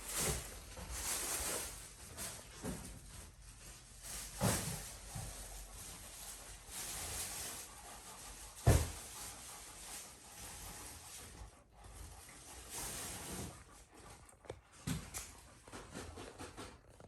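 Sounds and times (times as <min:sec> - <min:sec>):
faint rustling: 0:00.0 - 0:17.0.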